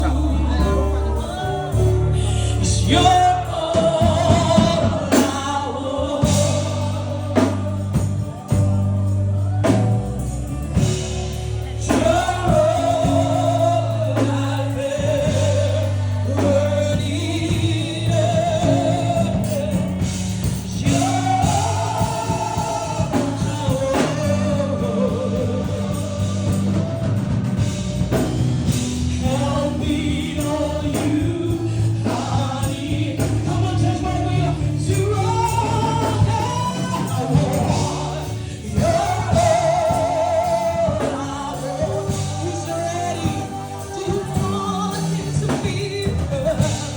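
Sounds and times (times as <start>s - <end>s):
gospel worship music: 0.0s - 46.9s.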